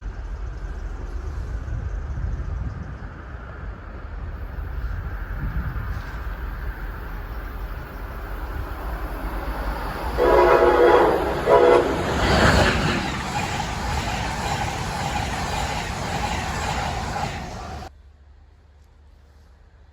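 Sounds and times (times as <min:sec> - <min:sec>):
train rushing noise: 0:00.0 - 0:18.0
low rumble: 0:00.0 - 0:18.7
train horn blasts: 0:09.9 - 0:12.5.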